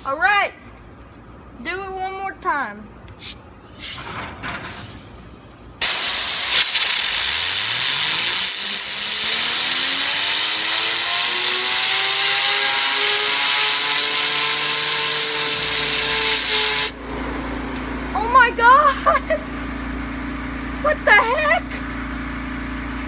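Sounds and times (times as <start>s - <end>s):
compressed air hissing: 3.2s - 17.0s
fidget spinner whine: 6.1s - 23.0s.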